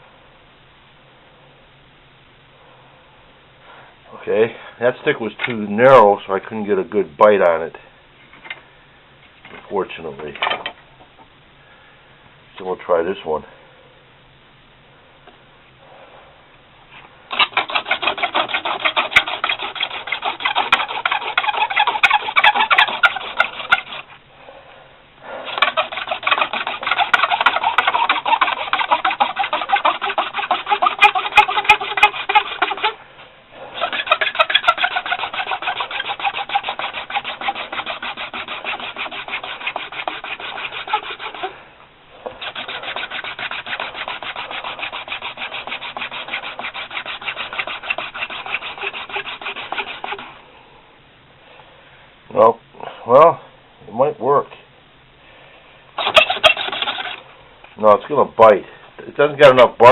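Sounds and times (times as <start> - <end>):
wooden spindle grinding on wood: 17.3 - 24.2, 25.4 - 33.0, 33.7 - 41.6, 42.2 - 50.4, 56.0 - 57.2.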